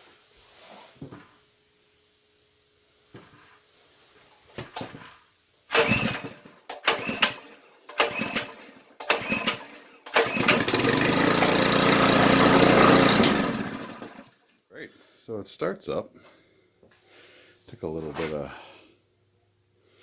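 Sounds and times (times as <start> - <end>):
recoil starter pulls: 5.7 - 14.4
small engine running: 5.7 - 14.4.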